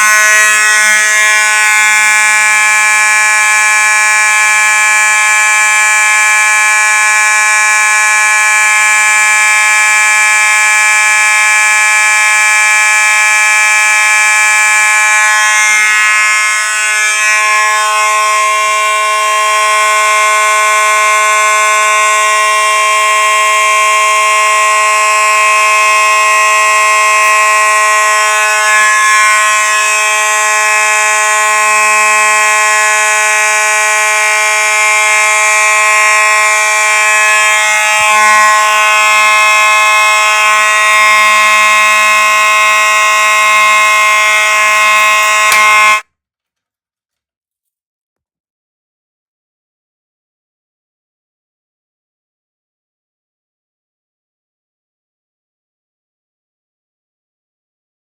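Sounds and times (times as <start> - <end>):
fire alarm horn tone: 0.0 - 46.1.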